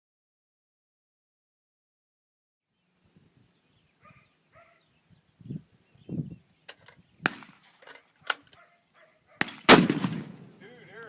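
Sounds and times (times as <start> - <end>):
dull gunshot thumps: 7.2 - 7.7, 9.4 - 10.6
sharp gunshot cracks: 7.2 - 8.6, 9.4 - 10.6.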